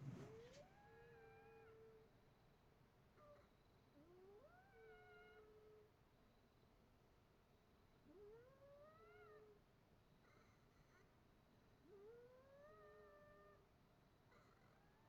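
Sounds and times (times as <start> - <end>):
faint cat yowling: 0.3 - 2.1, 3.2 - 5.9, 8.1 - 9.6, 11.8 - 13.7, 14.3 - 15.0.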